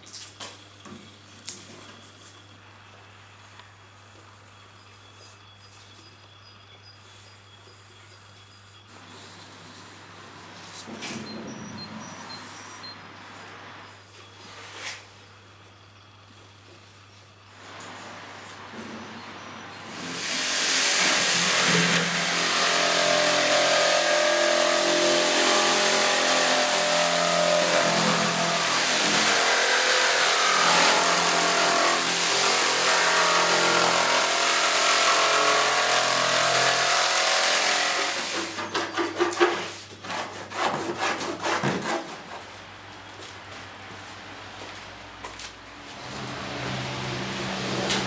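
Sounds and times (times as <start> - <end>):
power tool grinding metal: 19.9 - 38.7.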